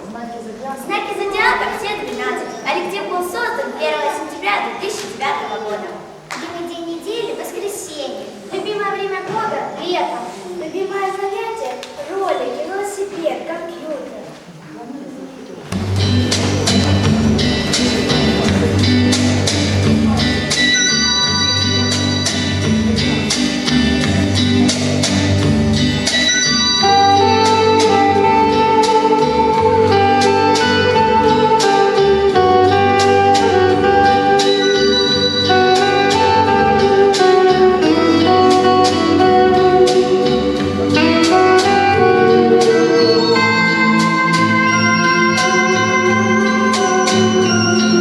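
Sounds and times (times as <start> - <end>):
instrumental music with beat: 15.8 - 48.0.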